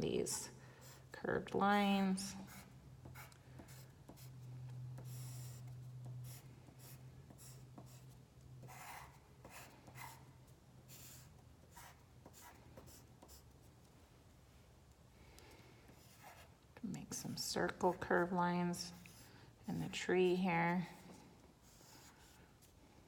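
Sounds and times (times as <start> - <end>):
faint low hum: 0.0 - 23.0
pen scratching on paper: 2.4 - 4.4, 5.0 - 10.2, 10.9 - 13.6, 16.0 - 16.5, 21.0 - 22.7.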